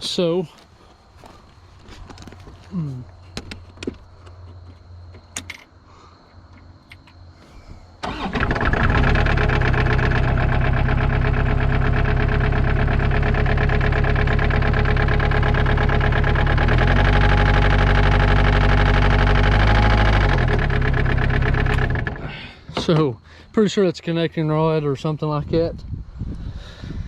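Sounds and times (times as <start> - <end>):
diesel engine knocking: 8.2 - 22.2.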